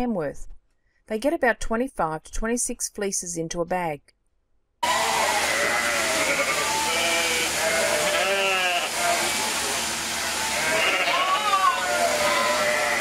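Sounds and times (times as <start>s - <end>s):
sheep bleating: 4.8s - 9.3s, 10.5s - 13.0s.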